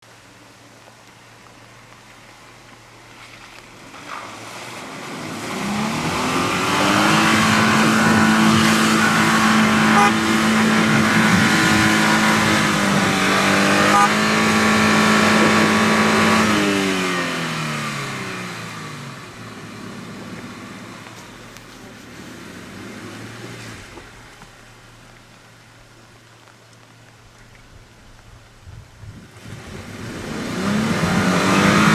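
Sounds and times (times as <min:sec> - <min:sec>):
vehicle engine passing by: 0:03.1 - 0:24.9, 0:29.3 - 0:31.9.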